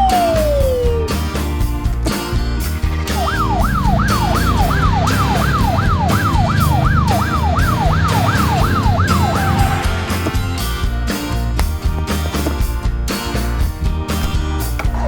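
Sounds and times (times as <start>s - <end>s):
background music: 0.0s - 15.0s
fire engine siren yelping: 3.2s - 10.4s.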